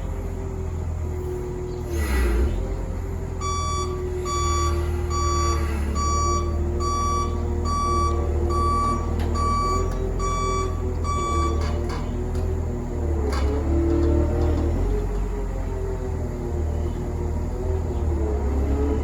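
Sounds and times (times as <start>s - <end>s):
engine rumble: 0.0s - 19.0s
excavator alarm beeping: 3.4s - 12.0s.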